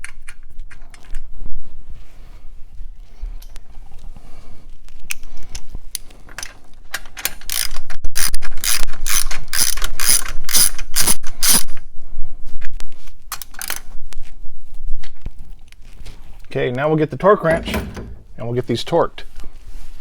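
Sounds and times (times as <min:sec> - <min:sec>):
ratchet wrench clicking: 0:07.5 - 0:11.6.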